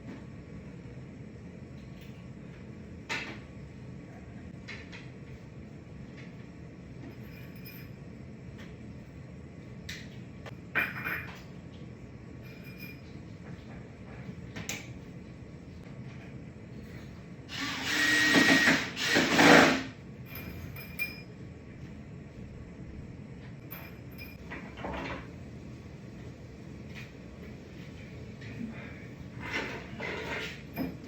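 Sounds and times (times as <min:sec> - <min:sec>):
power drill driving screws: 0:17.5 - 0:19.9.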